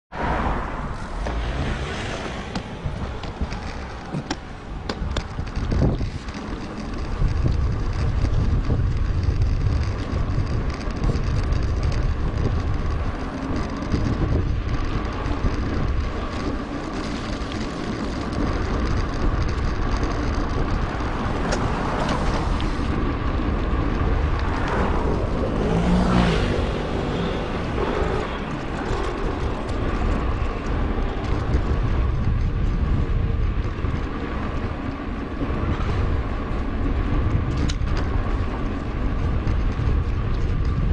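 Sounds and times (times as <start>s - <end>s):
bike tyre noise on road: 0.1s - 40.9s
wind buffeting microphone: 0.1s - 40.9s.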